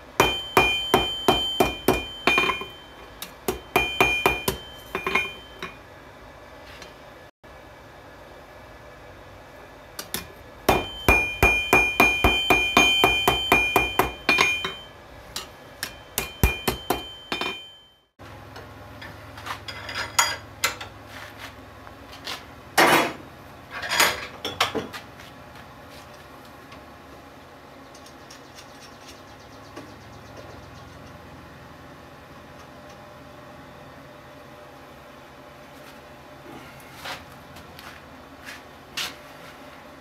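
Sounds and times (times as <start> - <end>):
hammer striking steel on anvil: 0.2 - 5.8, 10.0 - 18.1.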